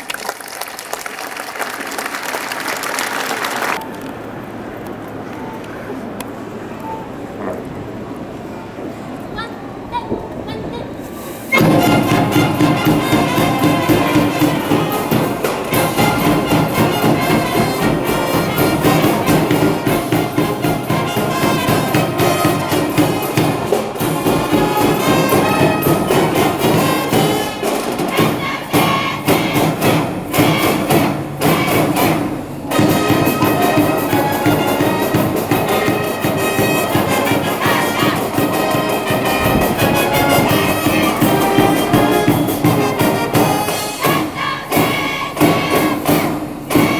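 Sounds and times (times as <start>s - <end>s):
brass band playing: 11.5s - 46.9s
steady drum beat: 11.5s - 46.9s.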